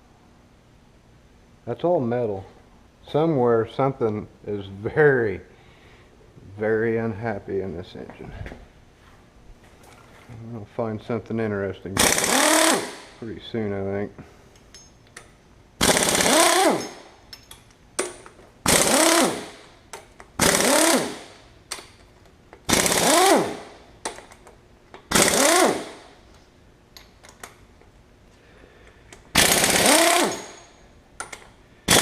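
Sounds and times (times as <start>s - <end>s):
impact wrench hammering: 12.0s - 13.2s, 14.7s - 22.0s, 22.6s - 26.2s, 29.1s - 32.0s.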